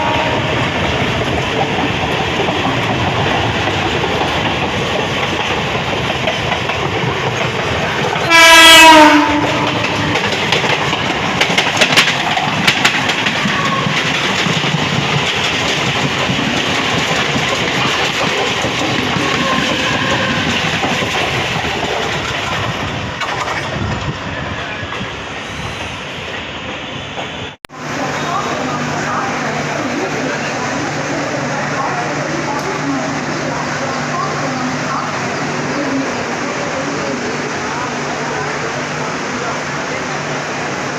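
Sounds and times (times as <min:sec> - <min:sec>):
train horn blast: 0:00.0 - 0:00.7, 0:08.2 - 0:10.3, 0:19.3 - 0:20.5
train rumble and wheel clatter: 0:00.0 - 0:40.9.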